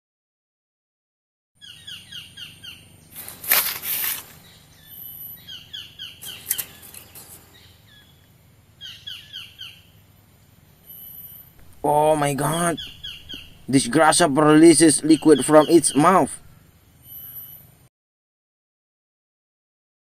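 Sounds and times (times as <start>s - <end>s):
faint high insect drone: 1.6s - 17.9s
loud rustle of leaves: 3.1s - 4.8s
bird calling in falling high notes: 10.9s - 16.5s.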